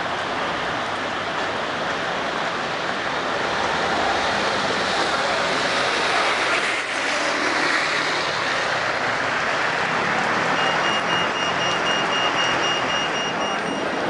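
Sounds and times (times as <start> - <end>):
tyres hissing on wet road: 0.0 - 10.9
heavy rain on street: 0.0 - 12.6
rapidly pulsing beep: 10.6 - 14.0.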